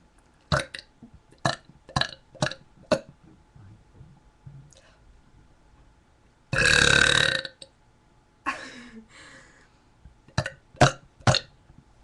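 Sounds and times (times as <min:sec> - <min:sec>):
person burping: 0:06.6 - 0:07.6.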